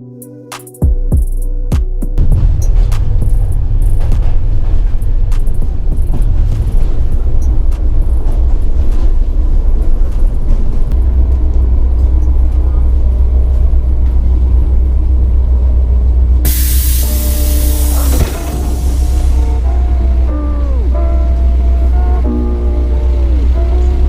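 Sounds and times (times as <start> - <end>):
heavy wind rumble: 2.2 - 24.0
loud hiss: 16.5 - 19.7.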